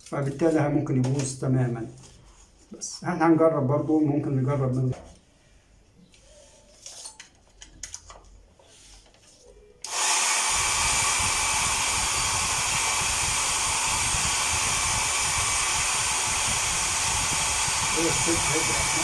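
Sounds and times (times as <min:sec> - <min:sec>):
hair dryer blowing: 0:09.8 - 0:19.0.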